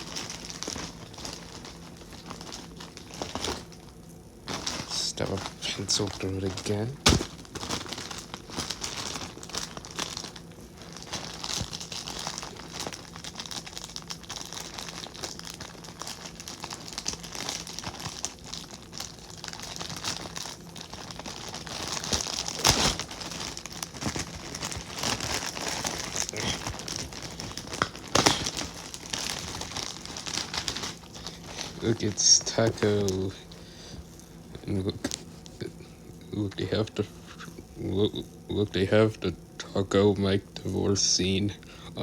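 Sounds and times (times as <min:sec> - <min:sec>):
plastic packaging crinkling: 0:00.0 - 0:38.9
plastic snapping: 0:07.0 - 0:07.9.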